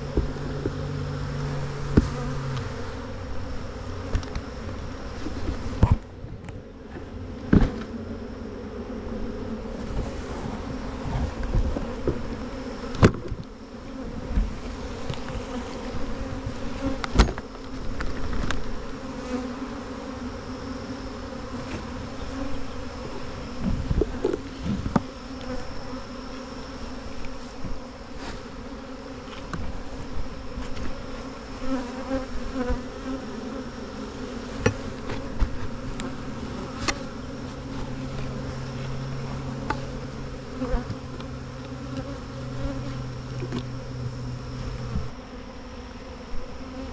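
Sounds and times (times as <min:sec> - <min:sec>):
low steady hum: 0:00.0 - 0:18.5, 0:33.6 - 0:45.3
honeybees buzzing: 0:00.0 - 0:46.9.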